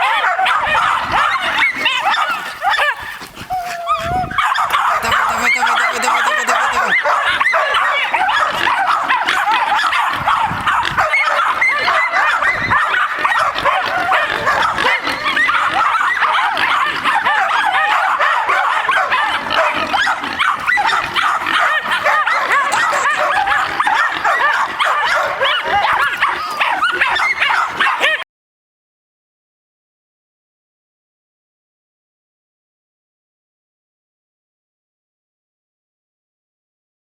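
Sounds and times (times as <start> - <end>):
dogs barking: 0.0 - 28.2.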